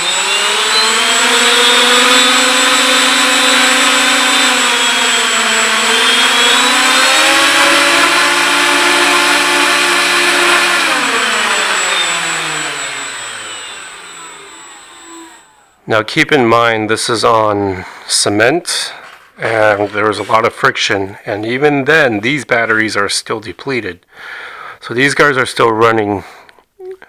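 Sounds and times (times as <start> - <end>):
electric motors whining: 0.0 - 15.8.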